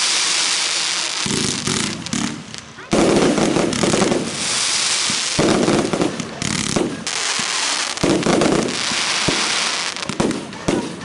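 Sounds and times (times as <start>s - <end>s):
firework cake shots: 0.0s - 11.0s
firework crackling: 0.0s - 11.0s
heavy firework bangs: 0.0s - 11.0s.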